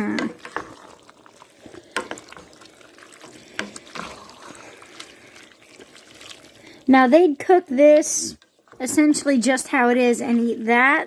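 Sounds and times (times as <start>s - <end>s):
stew sloshing in a pot: 0.0s - 9.4s
utensil clicking against pot: 3.5s - 4.2s.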